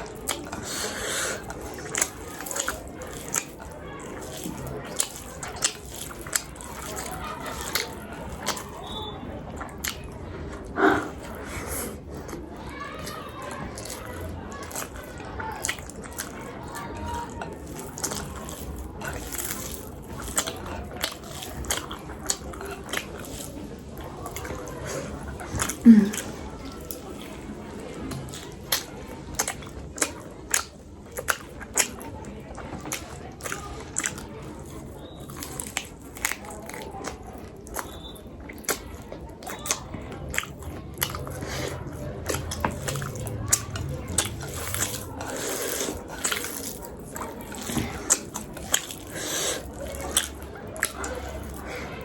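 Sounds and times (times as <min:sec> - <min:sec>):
wet smacks and clicks: 0:00.0 - 0:11.4, 0:12.0 - 0:52.0
chewing food: 0:00.0 - 0:52.0
wet mouth smacks and clicks: 0:28.1 - 0:34.2, 0:34.8 - 0:51.7.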